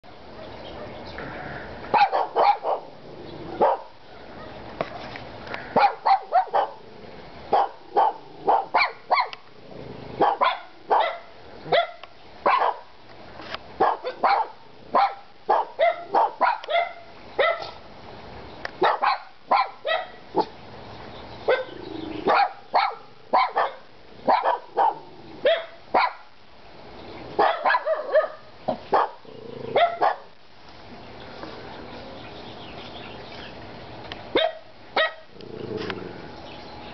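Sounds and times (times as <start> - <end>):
dogs barking: 1.9 - 4.7, 5.7 - 6.9, 7.5 - 9.4, 10.2 - 12.9, 13.8 - 17.8, 18.8 - 20.6, 21.4 - 26.3, 27.4 - 30.4, 34.3 - 35.9.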